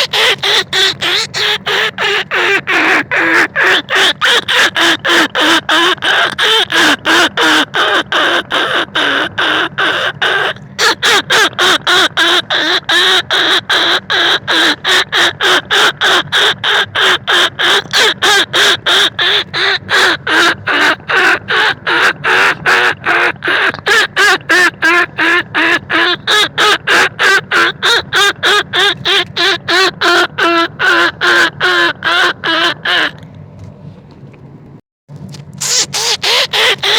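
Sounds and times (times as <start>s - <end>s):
repeated squeaking lure calls: 0.0s - 33.2s, 35.3s - 36.9s.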